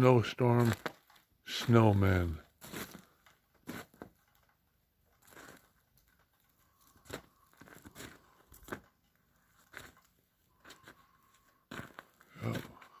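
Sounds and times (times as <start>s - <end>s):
footsteps crunching in snow: 0.5s - 4.1s, 6.6s - 13.0s.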